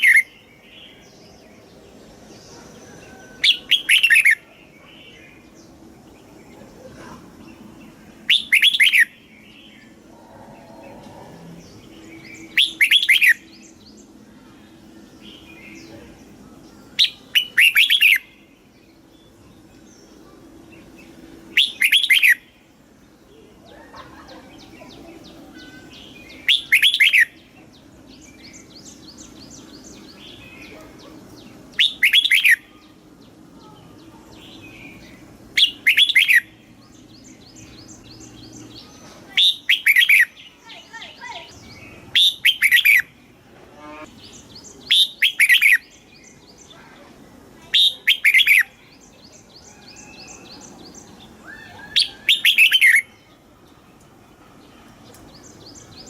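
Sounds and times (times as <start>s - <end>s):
bird song phrases: 0.0s - 56.0s
faint bird chirps: 23.2s - 43.1s.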